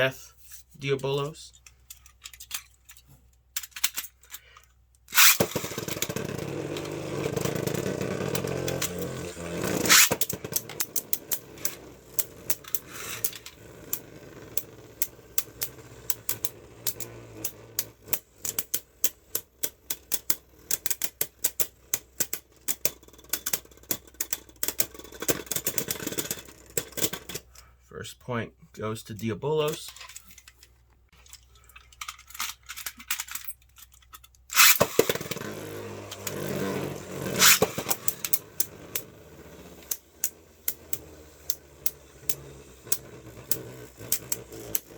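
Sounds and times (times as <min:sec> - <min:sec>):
spinning tops whirring: 0:05.1 - 0:27.5, 0:34.5 - 0:44.9
plastic tops clacking: 0:08.3 - 0:14.0, 0:29.2 - 0:35.5, 0:37.4 - 0:38.7
launcher snap: 0:08.4 - 0:11.8, 0:34.5 - 0:35.5, 0:37.2 - 0:38.8.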